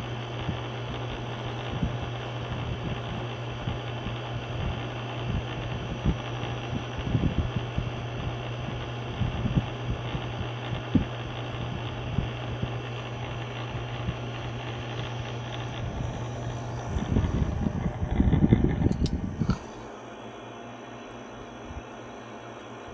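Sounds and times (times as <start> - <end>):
electric fan humming: 0.0 - 22.9
wind buffeting microphone: 15.8 - 19.6.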